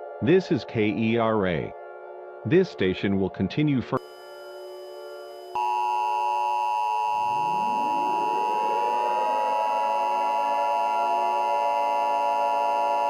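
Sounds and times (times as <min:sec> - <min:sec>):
low rising whine: 0:04.0 - 0:13.0
shrill electronic alert tone: 0:04.0 - 0:13.0.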